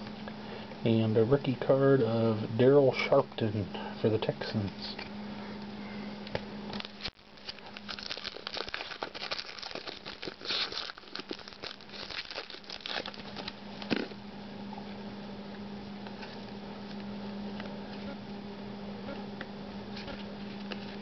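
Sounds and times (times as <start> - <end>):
card pack wrapper crinkling and tearing: 6.8 - 14.2.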